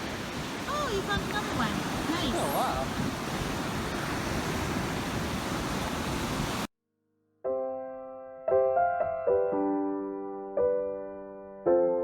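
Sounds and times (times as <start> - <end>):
ocean surf and wind: 0.0 - 6.7
solo piano chords: 6.9 - 12.0.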